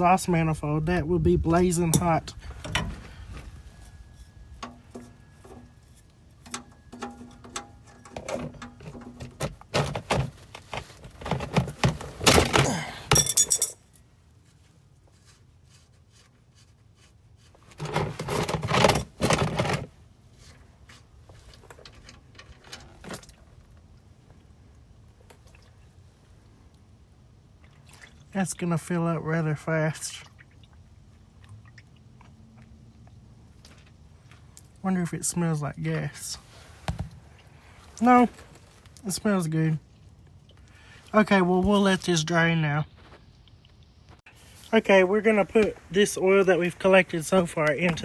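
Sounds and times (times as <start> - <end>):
metal clattering: 3.6 - 10.4, 11.2 - 13.8
wrench metal clicks and clinks: 13.1 - 13.8.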